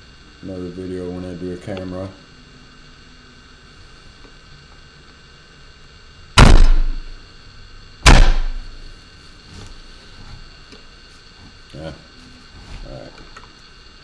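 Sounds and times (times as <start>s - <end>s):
loud thuds: 6.4s - 7.1s, 8.0s - 8.8s.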